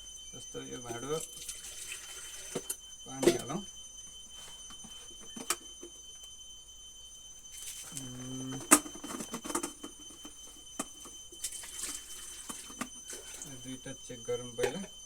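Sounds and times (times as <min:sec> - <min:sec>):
faint high whine: 0:00.0 - 0:15.0.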